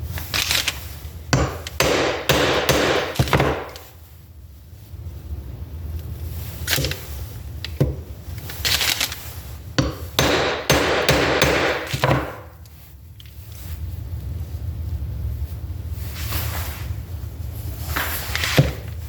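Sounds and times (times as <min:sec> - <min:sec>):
hammer knocking on metal: 0:09.8 - 0:12.4.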